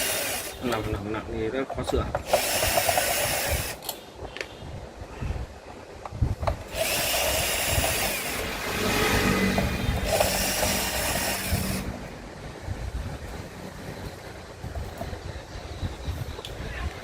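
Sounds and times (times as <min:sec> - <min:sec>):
power tool motor hum: 0:00.0 - 0:00.8, 0:02.2 - 0:03.8, 0:06.6 - 0:12.0.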